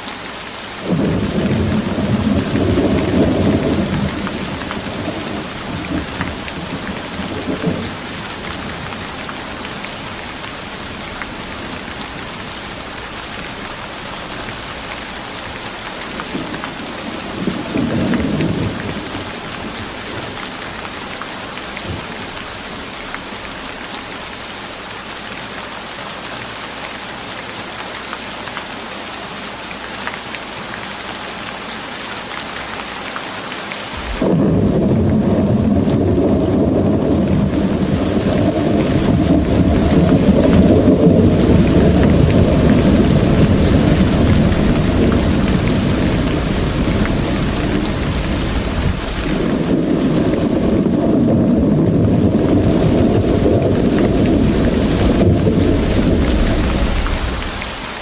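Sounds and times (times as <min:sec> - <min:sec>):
rain hissing: 0:00.0 - 0:26.0, 0:32.1 - 0:58.0
thunder rumbling: 0:00.8 - 0:23.9, 0:33.9 - 0:58.0.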